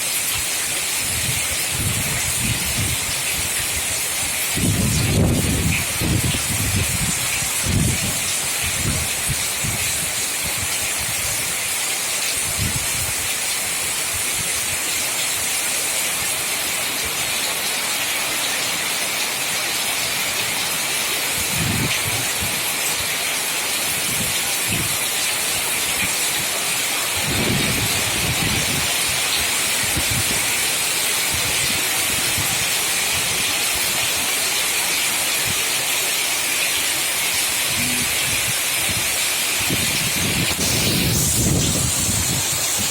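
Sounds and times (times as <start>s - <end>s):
heavy rain falling: 0.0s - 42.9s
wind gusting on microphone: 0.3s - 11.6s, 12.4s - 15.5s, 20.5s - 23.2s, 23.9s - 34.3s, 37.4s - 42.9s.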